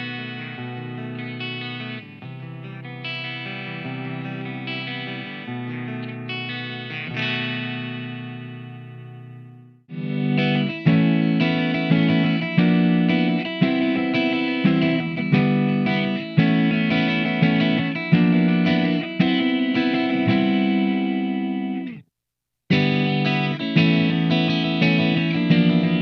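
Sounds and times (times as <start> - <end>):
electric guitar chords and notes: 0.0 - 22.0, 22.7 - 26.0.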